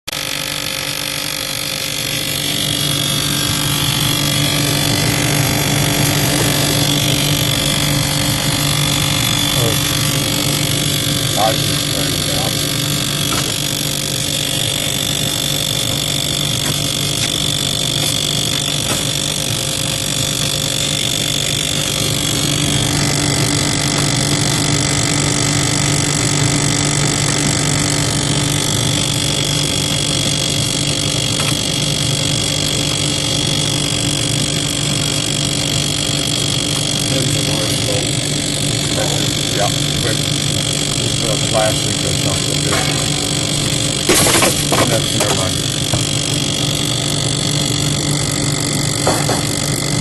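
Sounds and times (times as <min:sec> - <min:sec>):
freezer mechanical drone with whine: 0:00.0 - 0:50.0.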